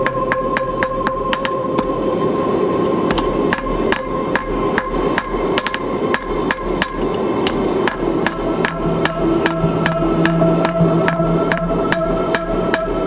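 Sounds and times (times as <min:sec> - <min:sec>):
hammer striking steel on anvil: 0:03.1 - 0:12.9.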